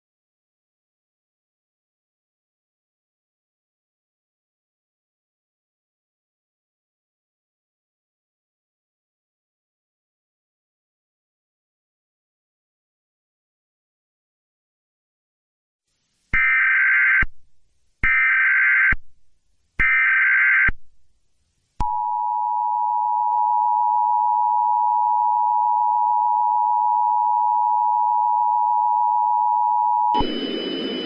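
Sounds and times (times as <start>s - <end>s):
two-tone attention signal: 21.8s - 31.0s
warbling digital data tones: 30.0s - 31.0s.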